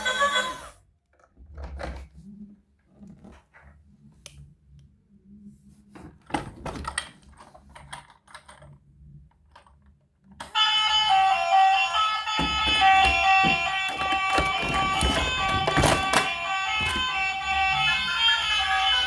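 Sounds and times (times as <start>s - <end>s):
plastic toys clicking: 6.9s - 10.6s, 12.4s - 17.2s
electronic toy tones: 10.6s - 19.0s.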